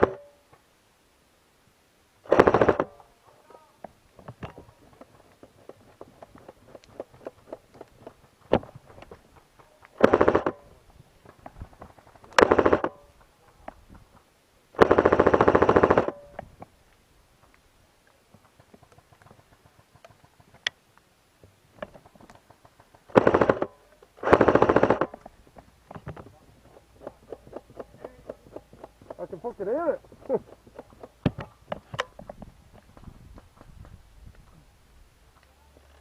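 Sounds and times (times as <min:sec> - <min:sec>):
airsoft guns firing bursts: 0:00.0 - 0:00.3, 0:02.3 - 0:03.0, 0:09.9 - 0:10.8, 0:12.3 - 0:13.1, 0:14.8 - 0:16.3, 0:23.1 - 0:25.2.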